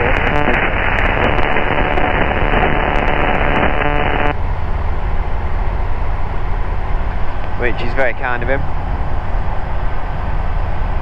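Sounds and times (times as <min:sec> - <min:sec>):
radio hiss: 0:00.0 - 0:04.4
aircraft engine drone: 0:00.0 - 0:11.0.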